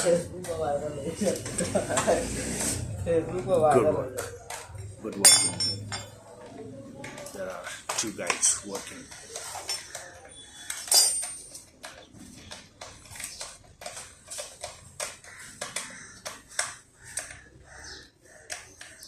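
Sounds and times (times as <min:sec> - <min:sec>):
metal tools clinking: 0:05.1 - 0:06.2, 0:10.7 - 0:11.7.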